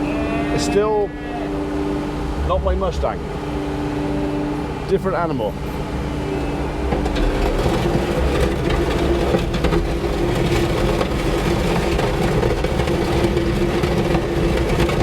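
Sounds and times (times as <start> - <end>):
skid steer engine rumbling: 5.6 - 15.0.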